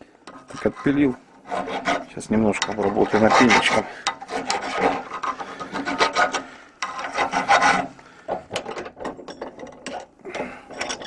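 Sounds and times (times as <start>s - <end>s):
hand file scraping metal: 0.3s - 8.4s.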